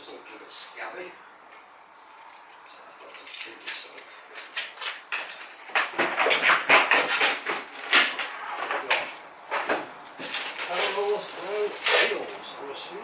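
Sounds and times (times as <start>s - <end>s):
packaging crinkling and scraping: 5.4s - 13.0s.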